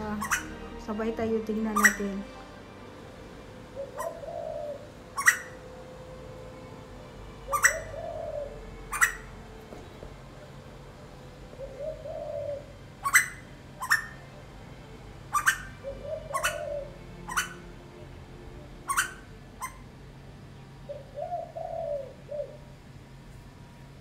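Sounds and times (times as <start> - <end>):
dove cooing: 0.0 - 0.6, 1.6 - 2.3, 3.6 - 14.3, 15.3 - 17.7, 18.8 - 19.9, 20.8 - 22.8
bird calling sharp rising notes: 0.0 - 9.6, 11.5 - 14.3, 15.2 - 17.9, 18.8 - 19.9.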